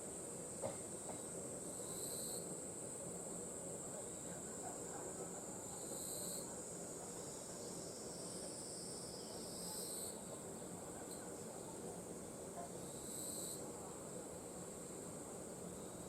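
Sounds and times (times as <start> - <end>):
insects chirring: 0.0 - 16.0
second insect call: 1.2 - 4.3, 5.5 - 14.2.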